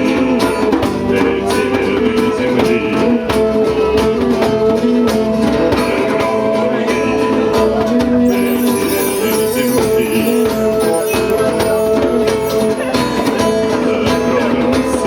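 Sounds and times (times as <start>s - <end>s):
live band playing instrumental: 3.3s - 15.0s.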